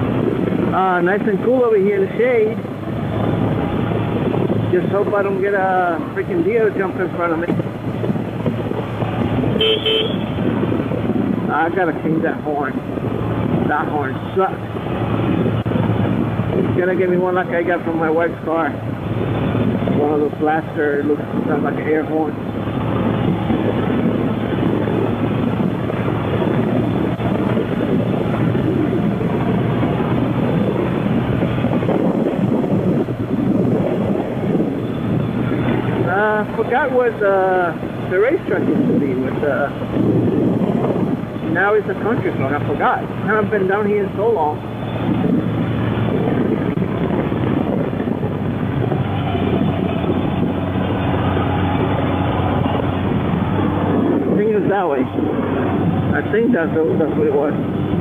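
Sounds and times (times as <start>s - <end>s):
road noise: 0.0s - 58.0s
wind noise on microphone: 0.0s - 58.0s
motorcycle engine running: 2.6s - 12.0s.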